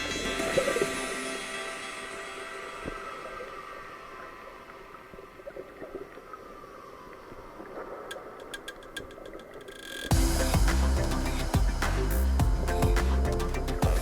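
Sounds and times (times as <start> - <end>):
background music: 0.0 - 4.2, 10.1 - 14.0
low underwater hiss: 10.1 - 14.0.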